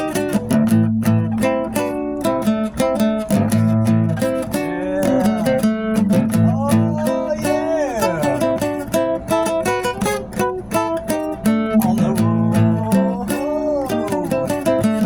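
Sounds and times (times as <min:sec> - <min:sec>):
guitar-led band music: 0:00.0 - 0:15.0.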